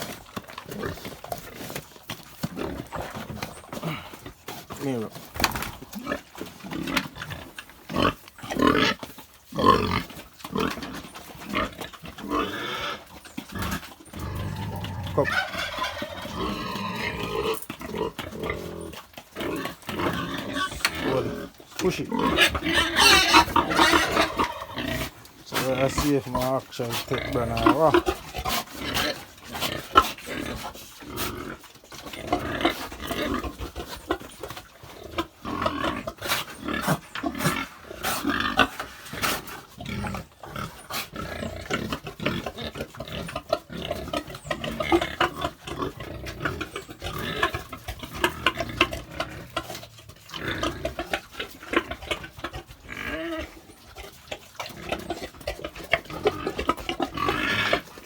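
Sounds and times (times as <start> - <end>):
pigs grunting: 0.0 - 58.0.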